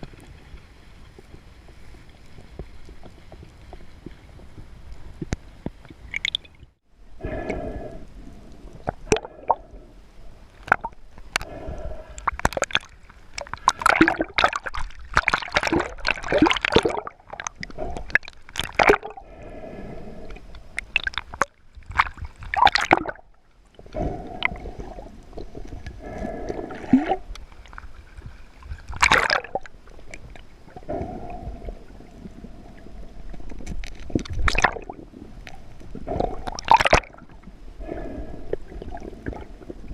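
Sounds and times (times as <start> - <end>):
water gurgling and sloshing: 0.0 - 39.9
breathing through snorkel: 7.2 - 10.0, 11.4 - 12.4, 19.1 - 20.8, 23.8 - 27.3, 30.8 - 33.2, 37.8 - 39.7
water splashing: 10.5 - 19.7, 20.7 - 39.9.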